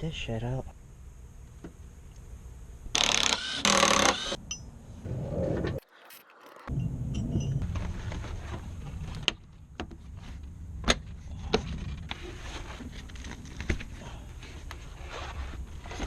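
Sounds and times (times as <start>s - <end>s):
steady low rumble: 4.7s - 5.9s, 6.5s - 12.8s.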